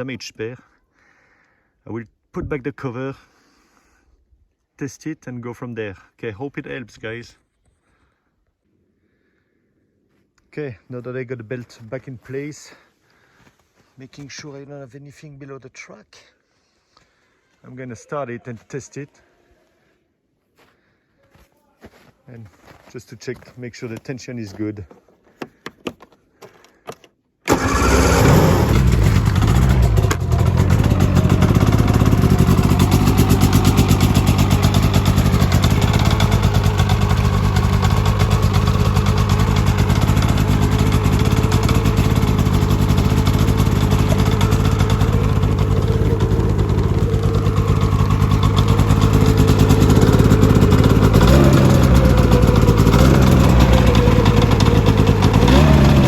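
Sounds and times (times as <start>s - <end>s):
snowmobile engine running: 27.5s - 56.0s.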